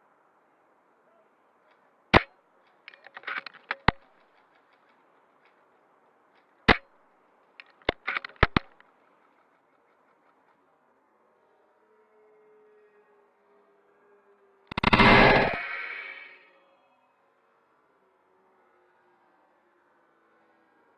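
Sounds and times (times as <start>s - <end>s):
rifle bolt clicks and clacks: 1.7s - 5.6s, 7.6s - 8.9s
airsoft rifle shots: 2.1s - 2.3s, 6.7s - 6.9s, 7.6s - 8.8s, 14.7s - 16.4s.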